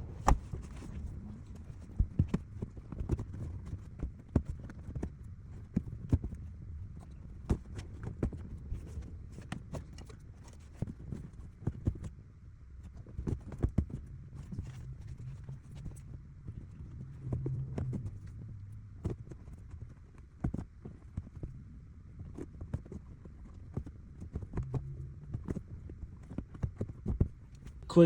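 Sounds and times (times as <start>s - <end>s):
steady low rumble: 0.0s - 3.6s, 14.0s - 20.0s.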